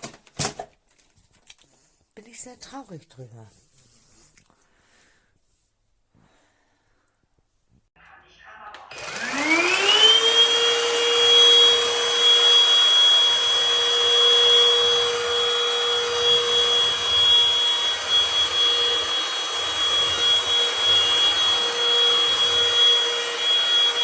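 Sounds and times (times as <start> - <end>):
vacuum cleaner running: 8.9 - 24.0.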